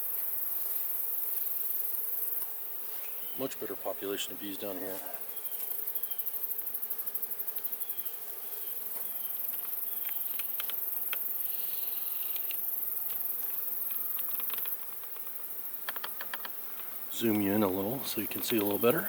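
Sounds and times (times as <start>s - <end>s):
bees buzzing: 0.2s - 19.0s.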